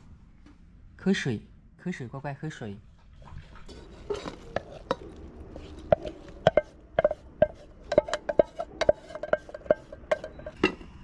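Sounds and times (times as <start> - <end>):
dog lapping water from bowl: 3.1 - 9.9.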